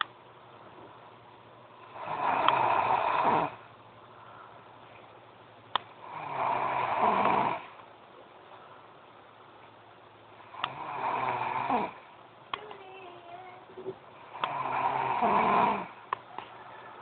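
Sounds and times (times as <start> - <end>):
girl snoring loudly: 1.8 - 3.6, 6.0 - 7.7, 10.4 - 12.1, 14.2 - 16.0.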